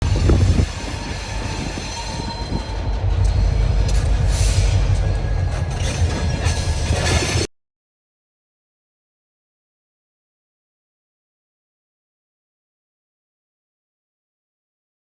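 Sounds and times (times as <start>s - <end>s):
freight train rumbling: 0.0s - 7.5s.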